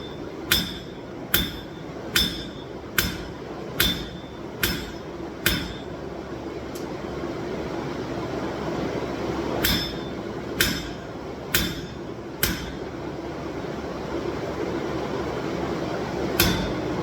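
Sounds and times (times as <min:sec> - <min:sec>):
hammer striking steel on anvil: 0:00.0 - 0:06.0, 0:09.6 - 0:12.9, 0:16.3 - 0:17.0
steady hum: 0:00.0 - 0:17.0.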